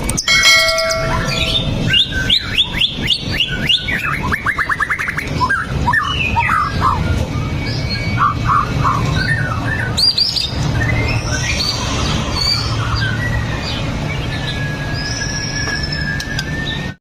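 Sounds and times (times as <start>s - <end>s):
steady low hum: 0.0s - 3.6s
bird singing whistled notes: 0.0s - 17.0s.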